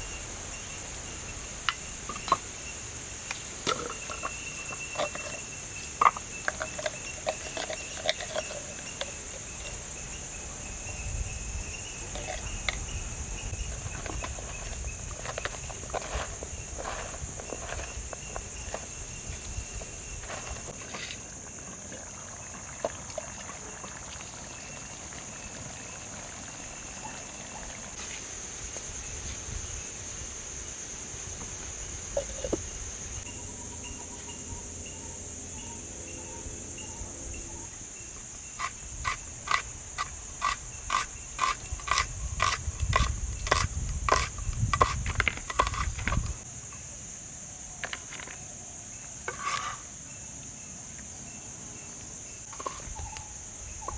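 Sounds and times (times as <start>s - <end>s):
insects shrilling: 37.7s - 46.5s, 52.3s - 53.9s.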